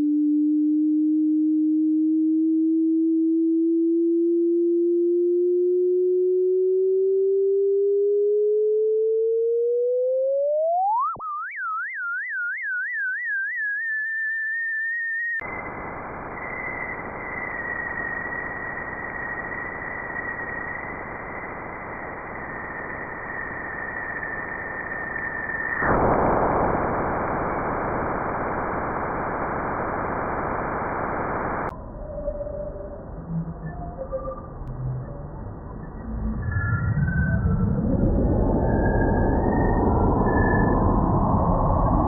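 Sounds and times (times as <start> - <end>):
static-like hiss: 15.4 - 31.7.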